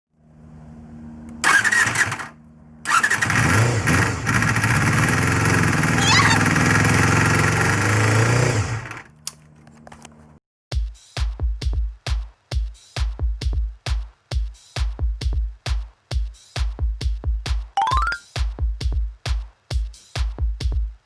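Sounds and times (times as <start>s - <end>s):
motorcycle engine starting and running: 0.8s - 9.4s.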